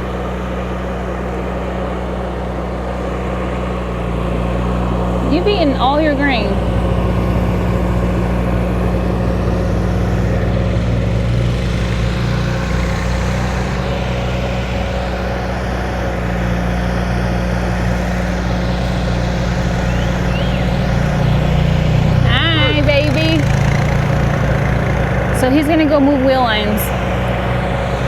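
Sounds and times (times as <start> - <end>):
engine idling: 0.0 - 28.0.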